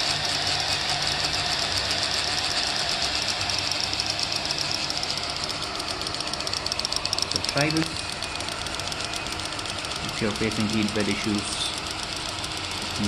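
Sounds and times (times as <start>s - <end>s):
relay clicking rapidly: 0.0s - 13.0s.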